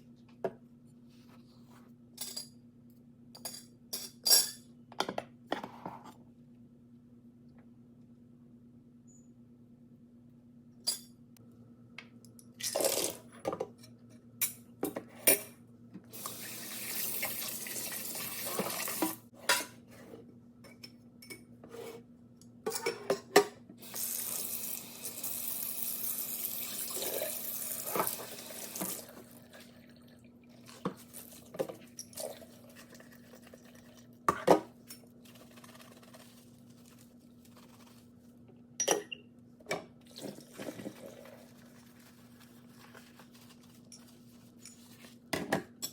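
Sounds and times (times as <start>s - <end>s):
water running from a tap: 16.2s - 19.2s, 23.8s - 31.4s
dishes and utensils clattering: 22.7s - 23.6s.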